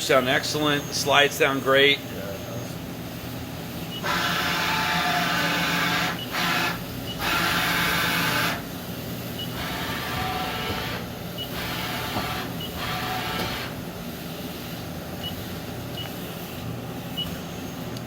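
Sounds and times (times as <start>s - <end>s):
machine axes whining at rapid traverse: 4.0s - 8.7s, 9.4s - 13.8s.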